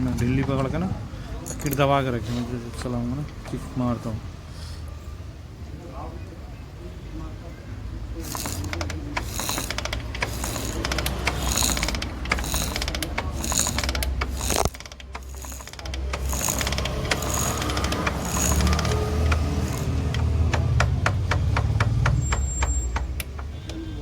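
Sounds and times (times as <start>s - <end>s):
metallic clicks of crankshaft: 8.2s - 23.9s
motorcycle engine kick-start: 8.2s - 24.0s.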